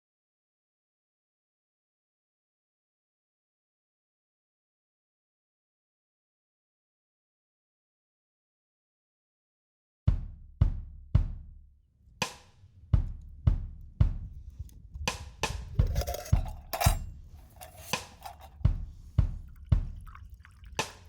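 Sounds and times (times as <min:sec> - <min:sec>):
drum kit beat: 0:12.2 - 0:21.0.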